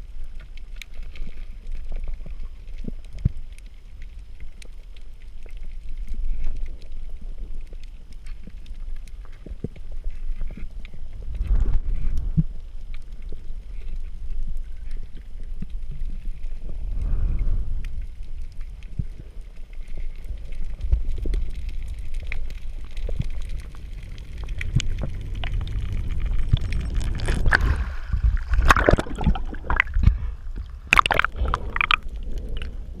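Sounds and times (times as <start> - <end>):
underwater low rumble: 0.0 - 33.0
water splashing: 22.8 - 33.0.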